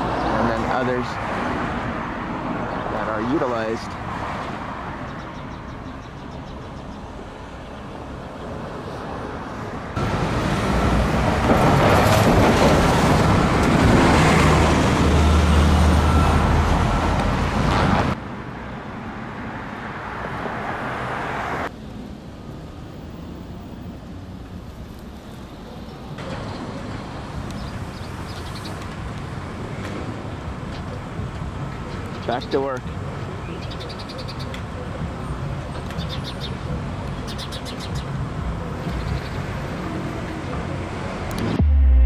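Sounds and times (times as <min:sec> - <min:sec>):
road traffic noise: 0:00.0 - 0:42.0
vehicle passing close: 0:08.7 - 0:18.2.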